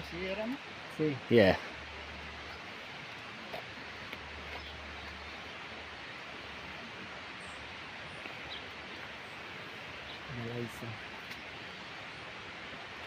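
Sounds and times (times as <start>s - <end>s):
outdoor background hiss: 0.0s - 13.0s.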